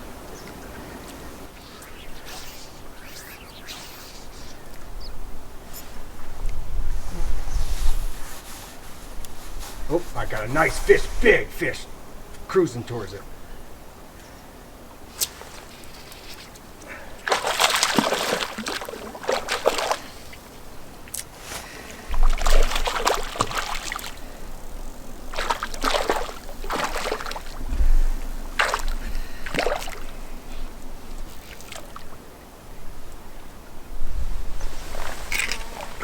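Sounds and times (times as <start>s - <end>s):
water splashing: 0.6s - 4.9s, 17.2s - 21.2s, 22.1s - 24.4s, 25.2s - 32.2s
low rumbles: 27.6s - 30.8s.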